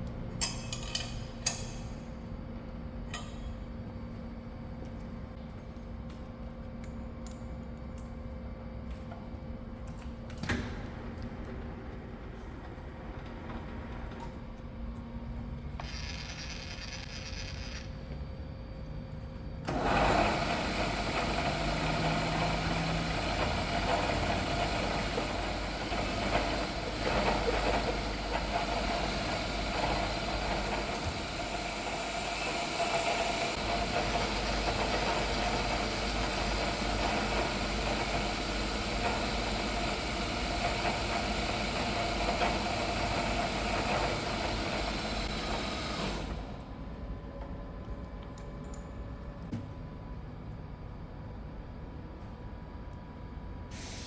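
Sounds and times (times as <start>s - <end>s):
workshop machinery running: 8.8s - 50.5s.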